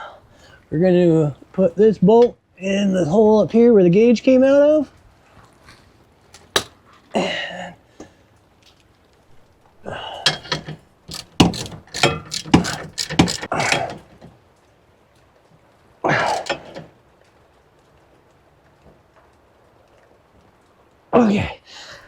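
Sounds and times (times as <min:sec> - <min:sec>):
hand tools clicking on metal: 0:10.1 - 0:14.2, 0:16.1 - 0:16.9.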